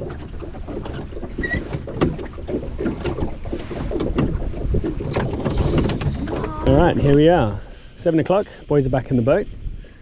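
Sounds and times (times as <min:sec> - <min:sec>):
wind buffeting microphone: 0:00.0 - 0:07.7
water against hull: 0:00.0 - 0:10.0.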